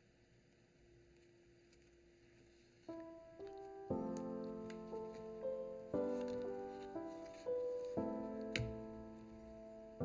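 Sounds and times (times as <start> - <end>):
soft piano chords and melody: 2.5 - 10.0.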